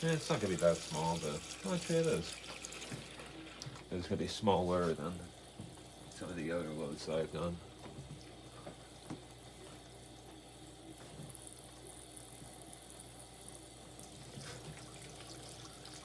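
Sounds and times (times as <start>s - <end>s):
water running into tub: 0.0s - 10.2s, 13.9s - 16.0s.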